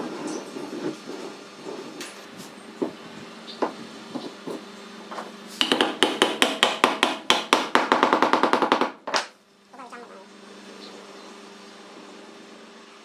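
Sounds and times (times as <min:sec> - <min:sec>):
hammer tapping on wood: 0:05.6 - 0:09.3
knocks: 0:05.6 - 0:09.3.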